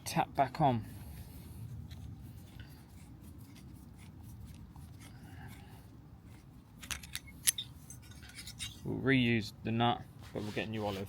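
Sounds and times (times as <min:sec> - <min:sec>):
metal parts rubbing and scraping: 0:06.3 - 0:08.9.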